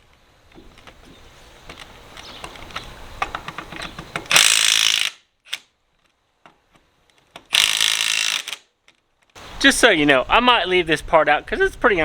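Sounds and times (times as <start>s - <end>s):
mechanical ratcheting clicks: 3.3s - 5.7s, 7.5s - 8.7s.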